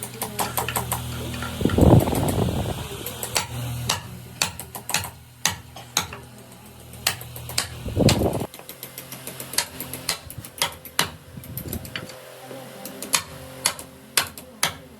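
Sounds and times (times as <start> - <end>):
steady low hum: 0.0 - 14.9
sharp taps and knocks: 3.2 - 12.2.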